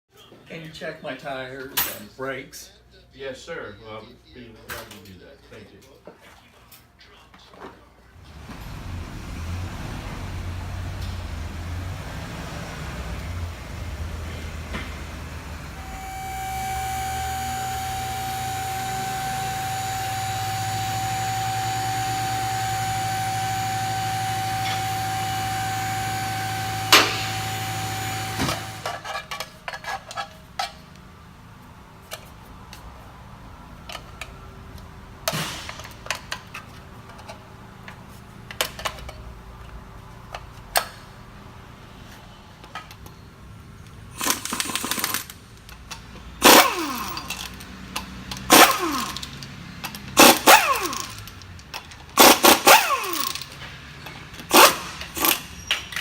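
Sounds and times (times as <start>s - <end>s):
machine hum with held tone: 15.3s - 28.9s.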